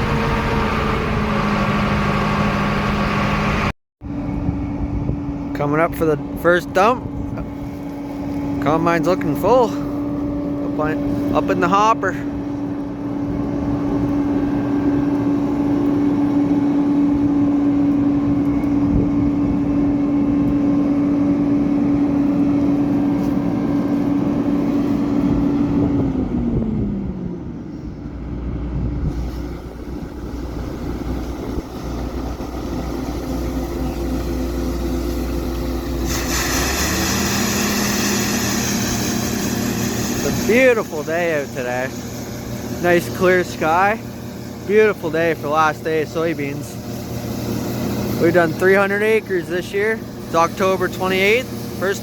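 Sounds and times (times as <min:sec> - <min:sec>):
harvester engine running: 0:00.0 - 0:52.0
high hissing machine sound: 0:33.0 - 0:45.5.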